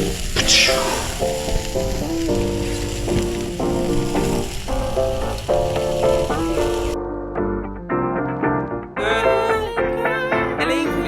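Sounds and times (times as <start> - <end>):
burgers sizzling: 0.0 - 7.0
background music: 0.0 - 11.0.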